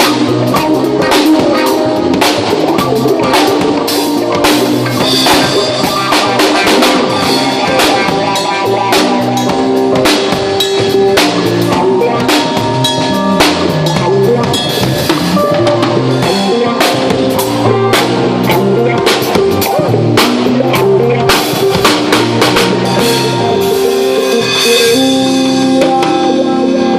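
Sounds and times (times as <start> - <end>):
band playing a song: 0.0 - 26.9
drum kit groove: 0.0 - 26.9.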